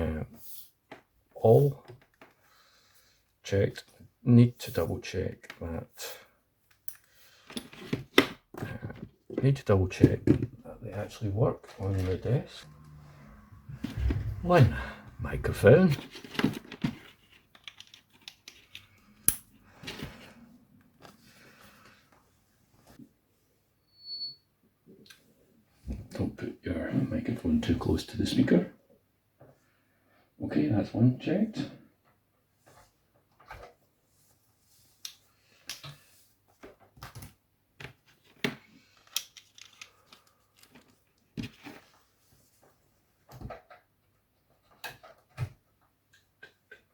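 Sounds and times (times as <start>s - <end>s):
cables and connectors handled: 13.7s - 21.2s, 35.0s - 42.0s
cable connectors clicking and rattling: 15.9s - 19.6s, 38.9s - 41.3s.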